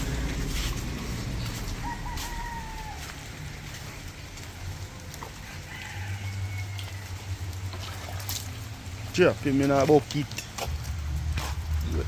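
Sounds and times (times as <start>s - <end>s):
rooster crowing: 1.7s - 3.3s, 5.4s - 7.4s.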